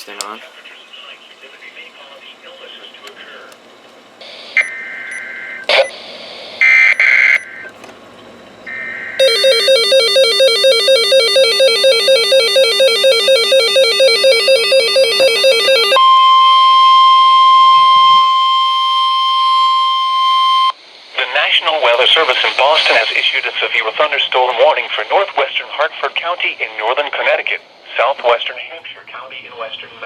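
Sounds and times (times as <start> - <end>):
steady warning alarm tone: 8.7 - 20.8
rapid electronic alert beeping: 9.2 - 16.2.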